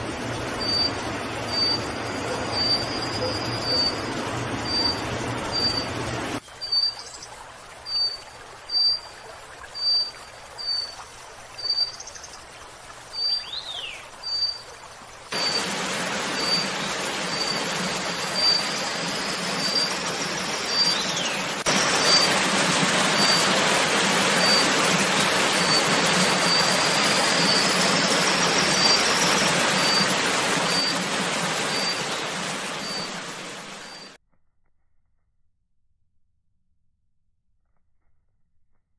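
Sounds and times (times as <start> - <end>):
loud steady rushing noise: 0.0 - 6.4, 15.3 - 34.2.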